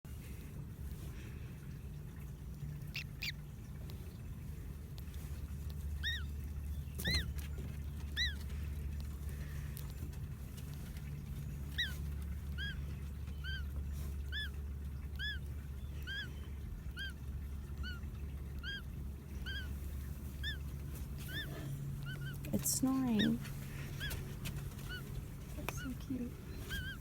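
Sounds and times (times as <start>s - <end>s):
low hum: 0.1s - 27.0s
duckling peeping inside egg: 2.2s - 27.0s.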